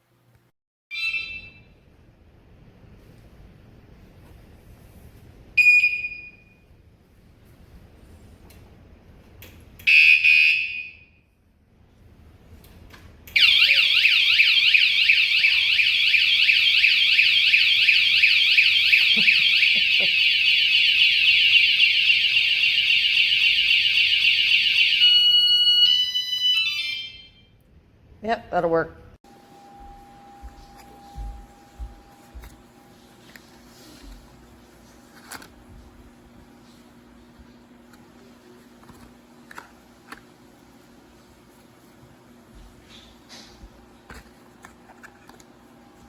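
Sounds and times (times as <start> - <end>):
alarm chirps: 13.4 - 27.4
warbling alarm siren: 13.4 - 27.4.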